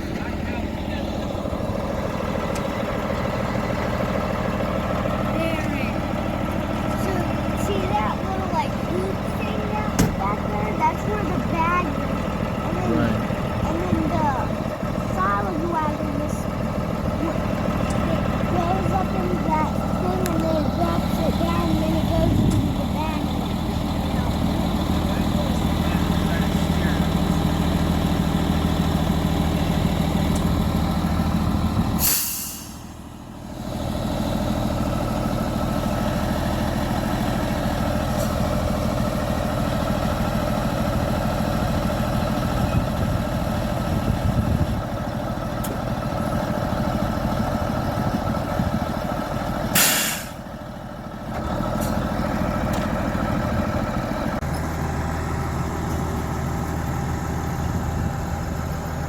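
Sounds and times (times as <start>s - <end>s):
vehicle engine running: 0.0s - 59.0s
short sharp hiss: 32.0s - 32.9s, 49.8s - 50.4s.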